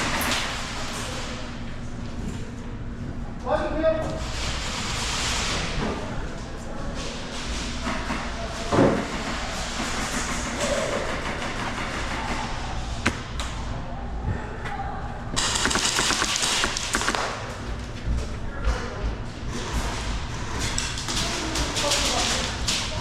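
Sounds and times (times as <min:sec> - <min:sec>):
airsoft gun firing in a burst: 0:15.4 - 0:17.4
scattered thuds and clicks: 0:15.4 - 0:17.4.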